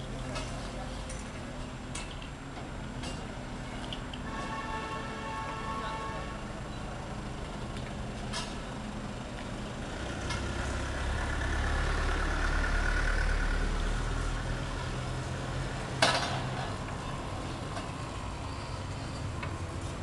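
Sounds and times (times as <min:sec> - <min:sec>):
vehicle engine rumbling past: 0:05.4 - 0:20.0.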